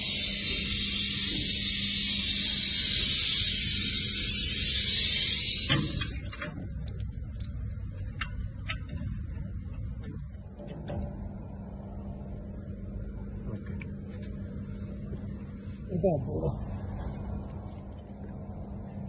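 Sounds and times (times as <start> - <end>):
loud steady hiss: 0.0 - 6.2.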